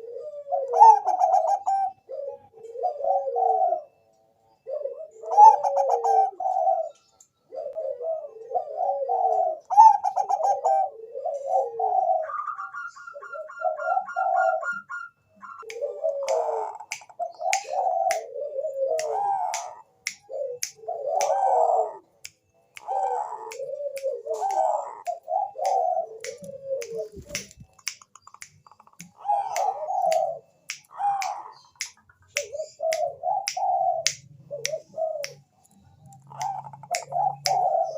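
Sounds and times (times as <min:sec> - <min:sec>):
dove cooing: 0:00.0 - 0:27.7, 0:29.0 - 0:37.9
sharp clicks: 0:22.2 - 0:37.6.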